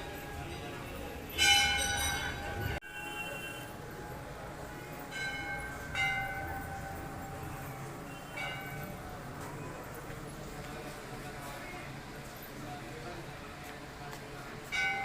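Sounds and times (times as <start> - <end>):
temple bell ringing: 0.0 - 10.1, 14.6 - 15.0.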